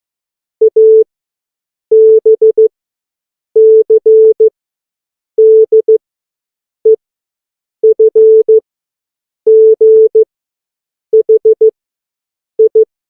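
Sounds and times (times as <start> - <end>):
morse code beeps: 0.7 - 1.1, 1.9 - 2.6, 3.6 - 4.5, 5.4 - 6.0, 7.8 - 8.6, 9.5 - 10.2, 11.2 - 11.7, 12.6 - 12.8.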